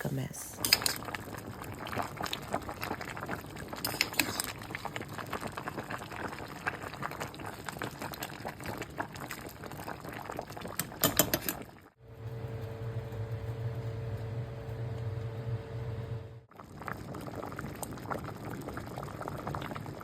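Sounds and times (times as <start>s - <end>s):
steady low hum: 12.0s - 16.4s.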